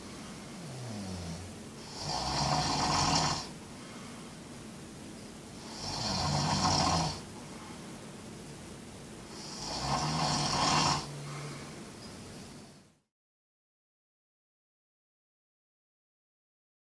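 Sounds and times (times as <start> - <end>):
person snoring: 0.6 - 3.5, 5.6 - 7.3, 9.3 - 11.4.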